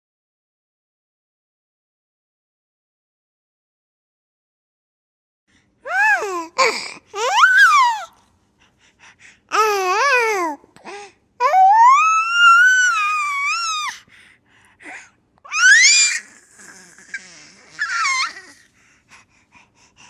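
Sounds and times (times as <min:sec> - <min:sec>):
baby squealing and babbling: 0:05.9 - 0:08.2, 0:11.4 - 0:14.0, 0:15.5 - 0:18.6.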